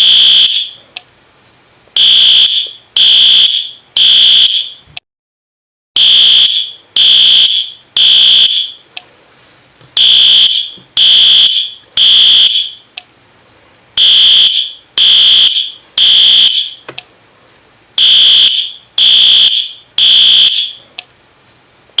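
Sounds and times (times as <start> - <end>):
fire alarm beeps: 0.0 - 0.8, 2.0 - 4.8, 6.0 - 8.8, 10.0 - 12.8, 14.0 - 16.8, 18.0 - 20.8.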